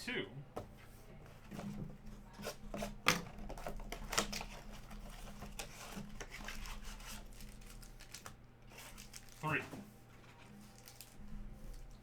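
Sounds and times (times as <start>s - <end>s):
cardboard and foil rustling: 3.4s - 12.0s.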